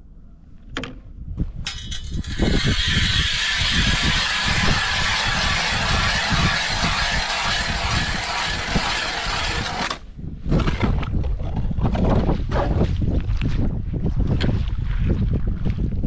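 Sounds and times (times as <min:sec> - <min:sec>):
wind buffeting microphone: 0:01.0 - 0:16.0
ice auger grinding: 0:01.7 - 0:10.1.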